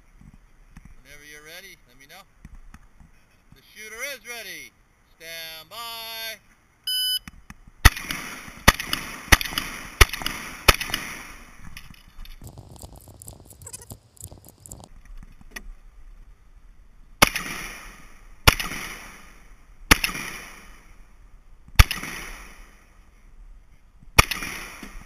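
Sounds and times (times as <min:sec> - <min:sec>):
shotgun shots with echo: 0:07.8 - 0:11.4, 0:17.2 - 0:19.3, 0:19.9 - 0:20.8, 0:21.8 - 0:22.7, 0:24.2 - 0:25.0.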